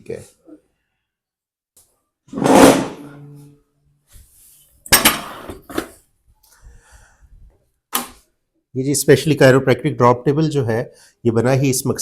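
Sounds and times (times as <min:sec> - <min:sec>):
loud metallic clank: 0:02.4 - 0:03.1.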